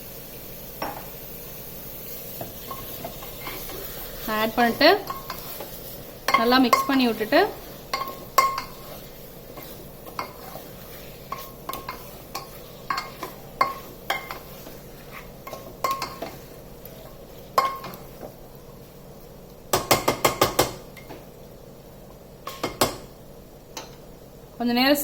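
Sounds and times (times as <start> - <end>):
metal spoon clinking against pot: 7.9 - 8.8, 15.4 - 16.4.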